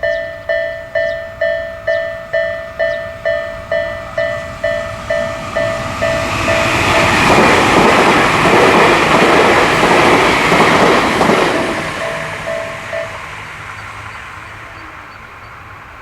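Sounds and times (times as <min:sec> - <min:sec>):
level-crossing bell dinging: 0:00.0 - 0:08.1, 0:11.2 - 0:13.9
train wheels clattering: 0:00.0 - 0:14.3.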